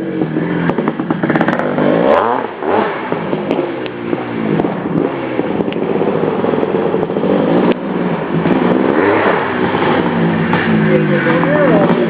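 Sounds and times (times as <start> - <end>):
dirt bike engine revving: 0.0 - 12.0.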